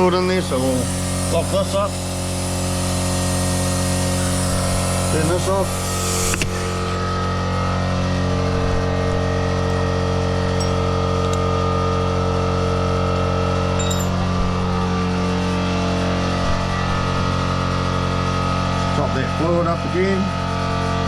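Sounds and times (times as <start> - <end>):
steady motor hum: 0.0 - 21.0
light metallic clinks: 10.5 - 11.5, 13.8 - 14.4.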